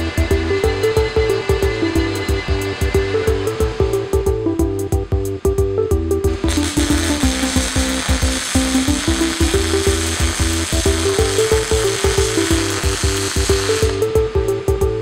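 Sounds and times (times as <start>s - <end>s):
background music with steady beat: 0.0s - 15.0s
welding arc sizzling hiss: 6.3s - 14.3s.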